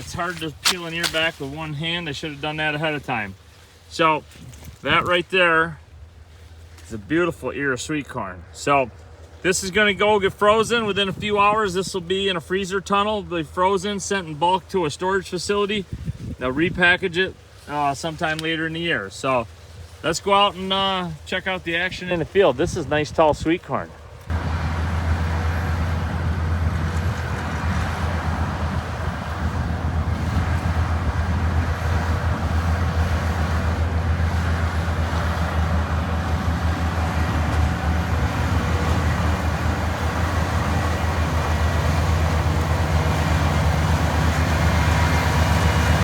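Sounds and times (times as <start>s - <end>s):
harvesting machinery drone: 0.0s - 3.2s, 24.0s - 46.0s.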